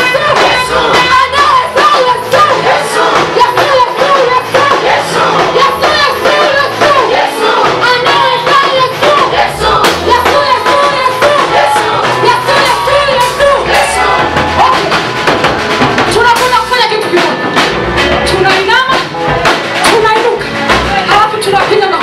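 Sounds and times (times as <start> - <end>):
choir singing: 0.0 - 15.0
band with drums: 0.0 - 22.0.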